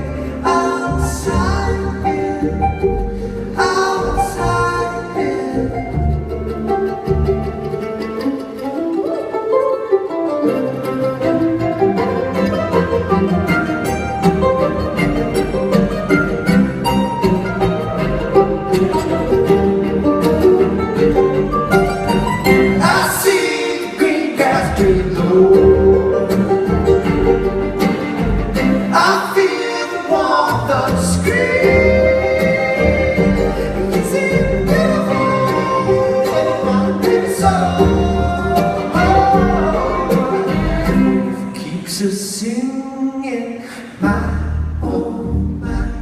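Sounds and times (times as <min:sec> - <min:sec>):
person singing: 0:00.0 - 0:06.3, 0:22.6 - 0:27.5, 0:28.8 - 0:46.0
acoustic string band playing: 0:00.0 - 0:46.0.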